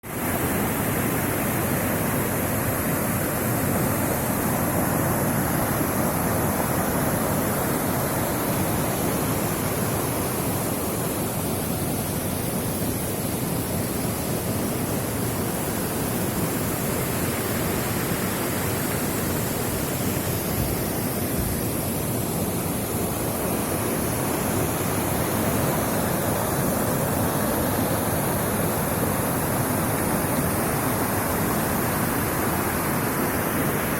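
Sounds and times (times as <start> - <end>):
waterfall rushing: 0.0 - 33.9.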